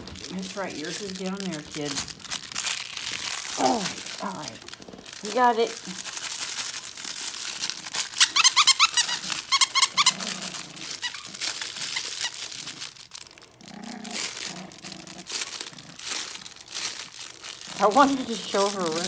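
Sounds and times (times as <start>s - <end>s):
paper crinkling inside toy: 0.0s - 19.0s
puppy chewing toy: 0.0s - 19.0s
rapid toy squeaks: 8.0s - 12.8s.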